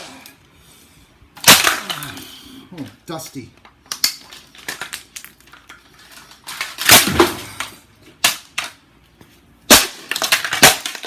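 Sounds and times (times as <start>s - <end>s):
plastic housing smashed with cracking: 1.4s - 2.2s, 3.8s - 8.8s, 9.7s - 11.0s.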